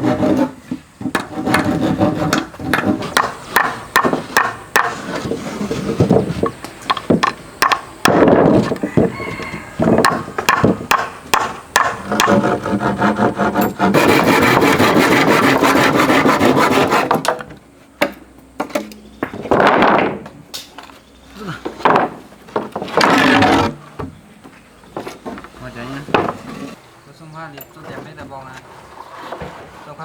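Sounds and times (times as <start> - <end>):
rasping on wood: 0.0 - 6.0, 11.8 - 17.2
hand tool scraping wood: 0.0 - 7.4, 9.8 - 17.5, 22.5 - 24.0, 24.9 - 26.8, 27.8 - 30.0.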